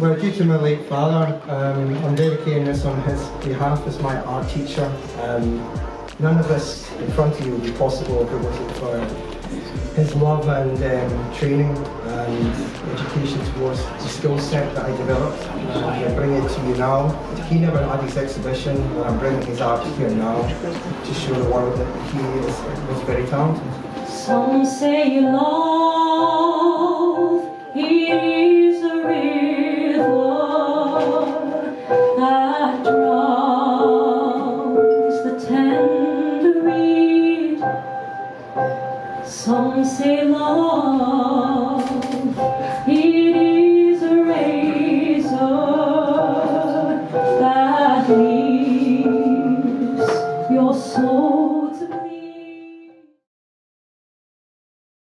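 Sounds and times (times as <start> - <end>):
sustained instrumental backing: 1.5 - 24.6.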